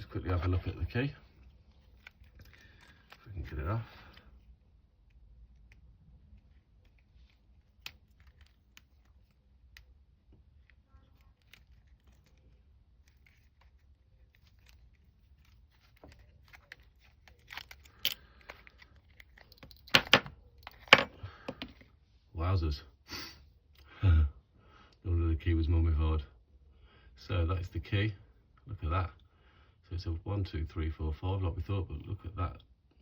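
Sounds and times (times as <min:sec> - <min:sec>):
wrapping crinkling and tearing: 0:01.3 - 0:04.2, 0:06.4 - 0:09.8, 0:10.6 - 0:19.7.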